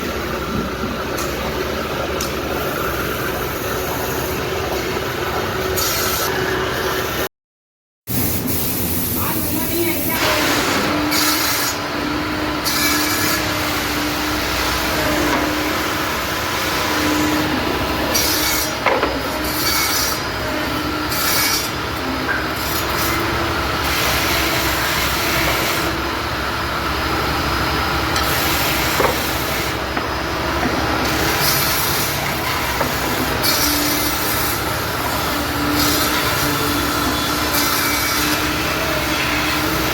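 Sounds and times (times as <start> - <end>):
tool working wood: 10.3 - 26.2, 27.1 - 39.9.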